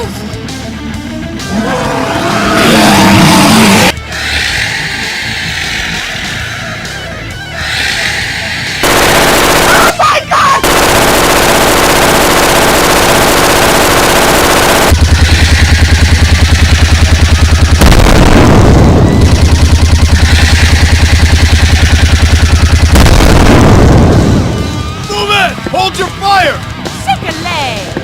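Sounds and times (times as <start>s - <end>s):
machine-gun fire: 8.8s - 10.0s, 10.6s - 24.5s.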